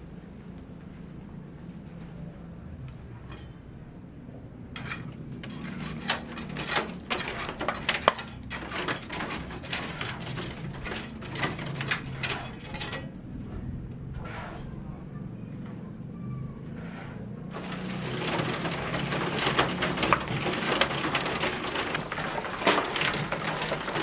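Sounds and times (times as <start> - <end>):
steady low hum: 0.0 - 5.8
clattering knocks and scrapes: 4.7 - 13.3, 16.8 - 24.0.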